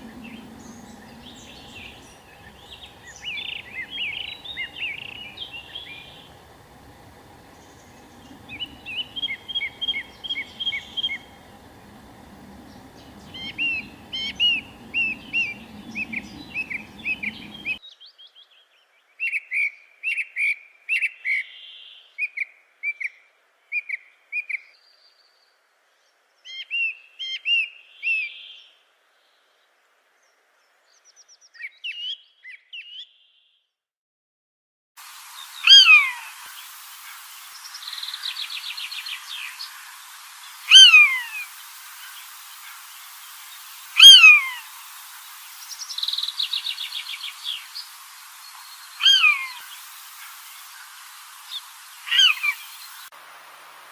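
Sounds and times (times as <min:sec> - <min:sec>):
small bird chirping: 0:00.0 - 0:06.4, 0:07.4 - 0:18.4, 0:35.3 - 0:53.1
low background noise: 0:00.0 - 0:20.9, 0:35.0 - 0:53.9
loud bird call: 0:07.3 - 0:17.8, 0:35.4 - 0:39.8, 0:40.5 - 0:42.8, 0:43.6 - 0:47.8, 0:48.6 - 0:50.8, 0:51.5 - 0:53.0.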